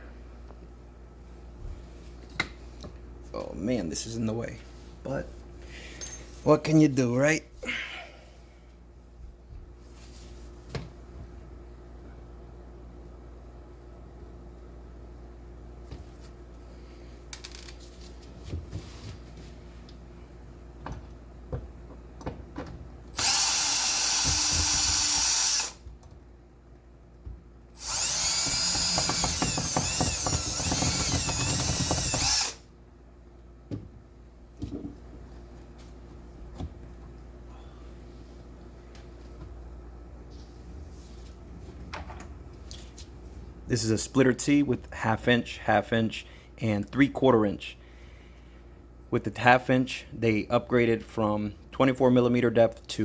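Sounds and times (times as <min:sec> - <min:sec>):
power drill running: 0:23.2 - 0:25.8, 0:27.8 - 0:32.6.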